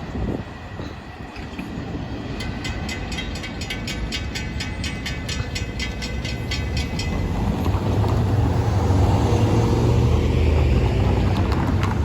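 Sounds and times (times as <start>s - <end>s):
wind on microphone: 0.0s - 2.3s
heavy vehicle rumbling past: 6.9s - 12.0s.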